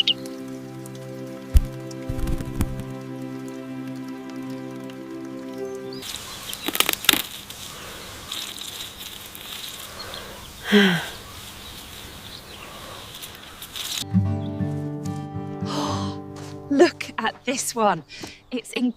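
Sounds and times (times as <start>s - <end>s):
soft background music: 0.0s - 6.0s, 14.0s - 18.9s
steady outdoor hiss: 0.0s - 14.9s
rustling and flapping: 1.5s - 2.9s.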